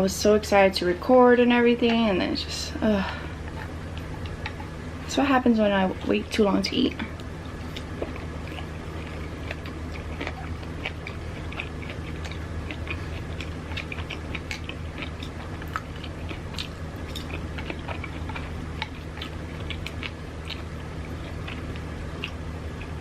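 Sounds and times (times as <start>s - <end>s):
low hum: 0.0s - 23.0s
person chewing: 3.3s - 4.8s, 6.9s - 23.0s.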